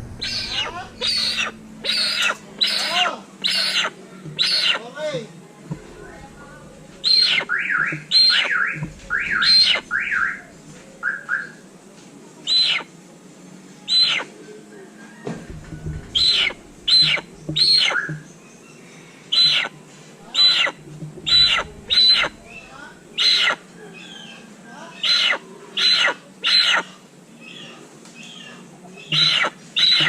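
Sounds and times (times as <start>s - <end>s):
hornbill squawking: 0.0s - 4.9s, 5.9s - 11.5s, 12.5s - 12.9s, 13.9s - 14.3s, 15.8s - 18.2s, 19.3s - 27.0s, 29.0s - 30.0s.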